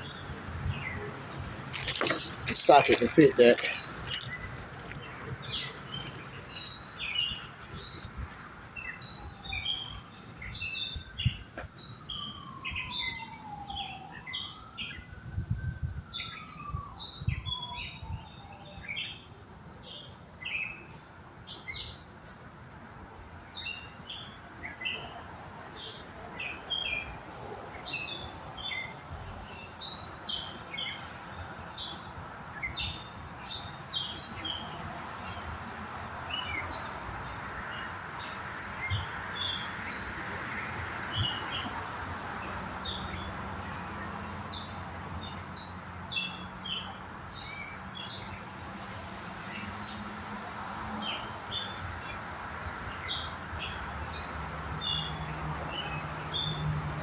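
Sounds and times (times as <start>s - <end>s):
small birds chirping: 0.0s - 15.1s.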